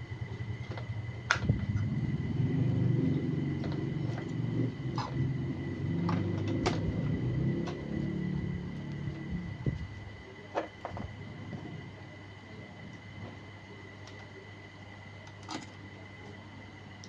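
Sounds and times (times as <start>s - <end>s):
steady low rumble: 0.0s - 13.7s
small parts clicking and tapping: 0.4s - 1.9s, 2.7s - 9.3s, 15.2s - 15.8s.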